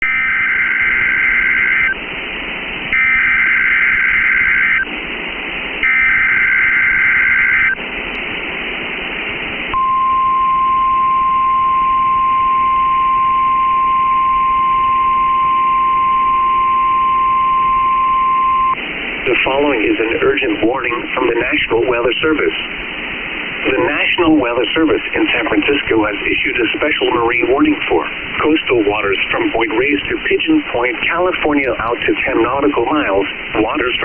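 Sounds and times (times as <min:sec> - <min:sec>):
steady single-pitch alert tone: 0:00.0 - 0:02.0, 0:02.9 - 0:04.9, 0:05.8 - 0:07.8, 0:09.7 - 0:18.8
two-tone digital data bursts: 0:00.0 - 0:02.0, 0:03.0 - 0:04.9, 0:05.8 - 0:07.8
radio hiss: 0:00.0 - 0:09.9, 0:14.8 - 0:34.0.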